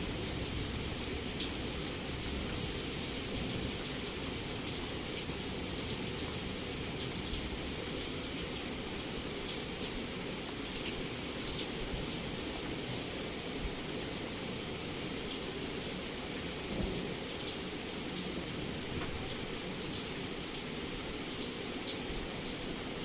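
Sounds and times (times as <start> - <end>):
heavy rain hissing: 0.0 - 23.0
raindrops tapping on glass: 18.7 - 20.1.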